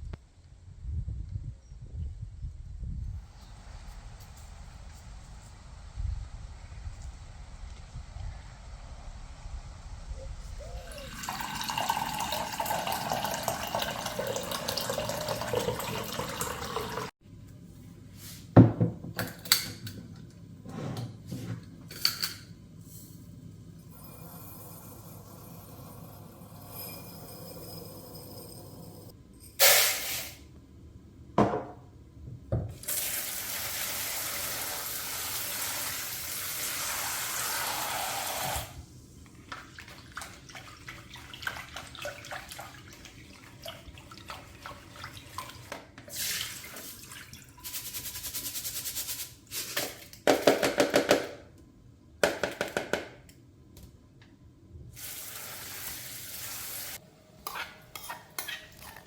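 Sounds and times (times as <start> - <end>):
loud ringing scrape: 26.4 - 29.1.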